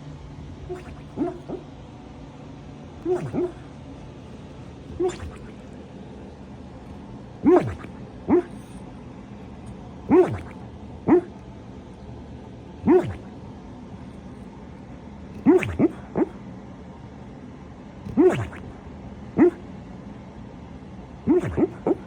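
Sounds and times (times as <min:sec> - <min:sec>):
dog snoring: 0:00.5 - 0:01.7, 0:03.0 - 0:05.8, 0:06.6 - 0:11.4, 0:12.8 - 0:16.4, 0:18.0 - 0:18.8, 0:19.4 - 0:19.7, 0:21.2 - 0:22.0.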